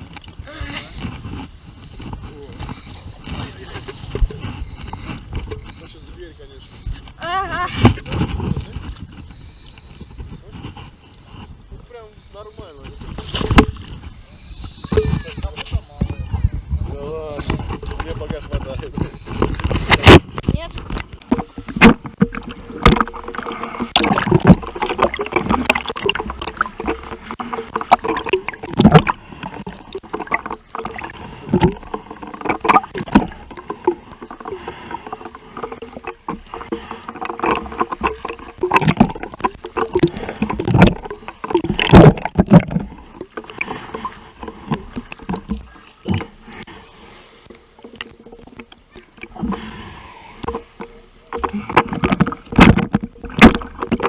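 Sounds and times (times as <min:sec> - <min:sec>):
water splashing and sloshing: 0:00.0 - 0:54.0.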